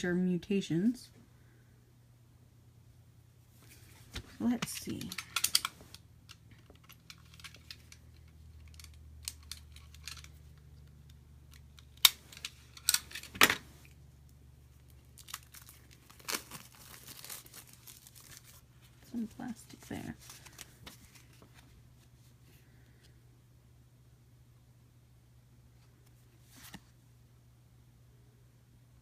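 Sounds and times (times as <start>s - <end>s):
plastic packaging crinkling and tearing: 14.7s - 19.1s.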